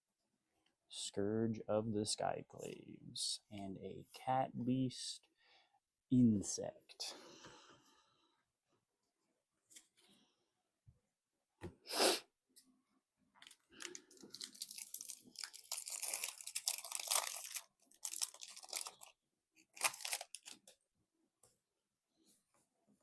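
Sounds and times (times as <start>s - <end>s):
foil wrapper tearing and crinkling: 13.7s - 20.8s.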